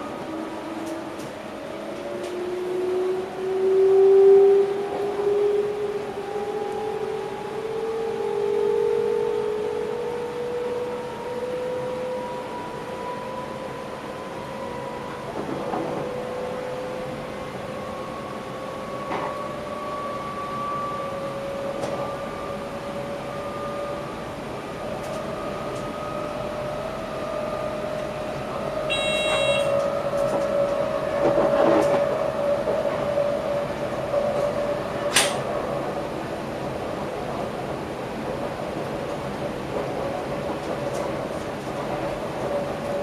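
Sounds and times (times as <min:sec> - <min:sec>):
electric train whine: 0:00.0 - 0:43.0
short electronic beep: 0:28.9 - 0:29.8.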